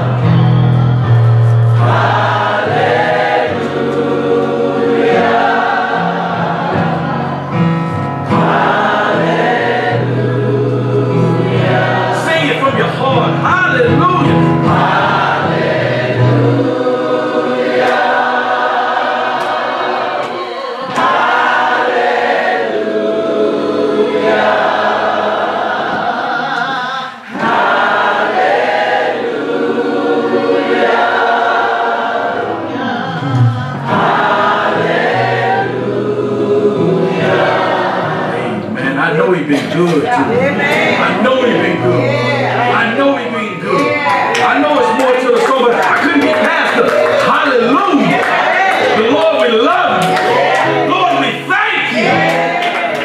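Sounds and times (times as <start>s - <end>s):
gospel choir singing: 0.0s - 53.0s.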